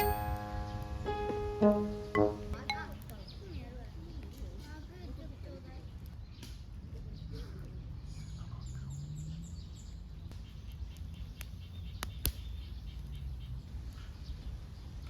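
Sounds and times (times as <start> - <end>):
bird singing high falling notes: 0.0 - 3.1.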